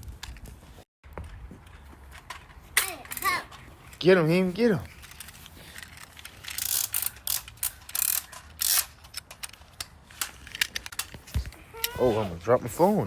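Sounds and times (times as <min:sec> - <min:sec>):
plastic clicks and clacks: 0:05.0 - 0:11.6.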